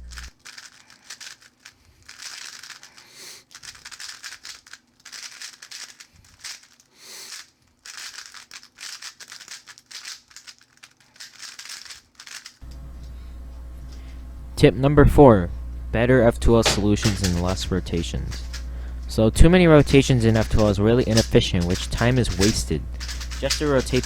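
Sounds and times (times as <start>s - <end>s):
plastic puzzle cube clicking: 0.1s - 12.6s, 19.4s - 24.0s.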